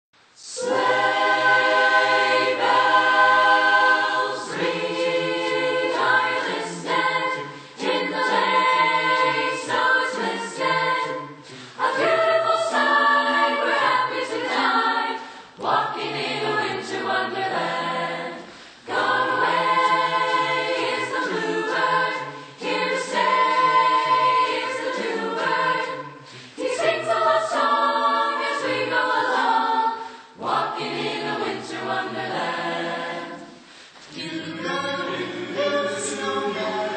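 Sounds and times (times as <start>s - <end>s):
choir singing a cappella: 0.2s - 36.9s
singers breathing: 7.4s - 7.8s, 11.4s - 11.8s, 15.2s - 15.6s, 18.4s - 18.9s, 22.3s - 22.6s, 26.1s - 26.7s, 29.9s - 30.4s, 33.5s - 34.1s.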